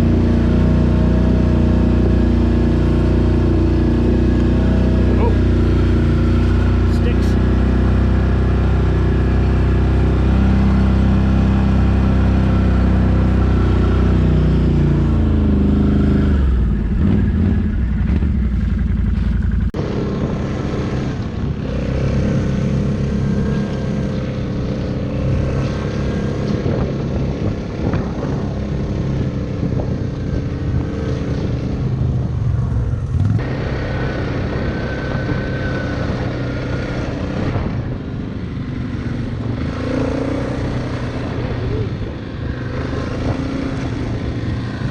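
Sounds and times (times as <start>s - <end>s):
atv engine running: 0.0s - 44.9s.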